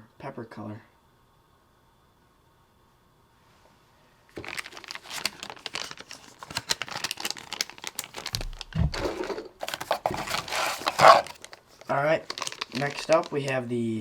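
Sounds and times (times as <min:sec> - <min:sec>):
plastic packaging crinkling: 0:04.3 - 0:13.7.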